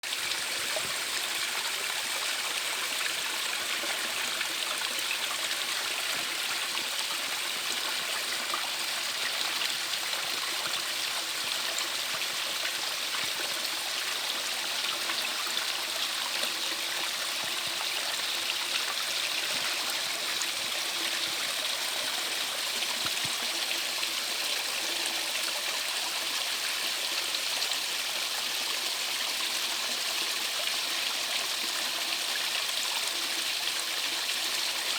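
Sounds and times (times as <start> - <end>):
stream flowing over rocks: 0.0 - 34.9.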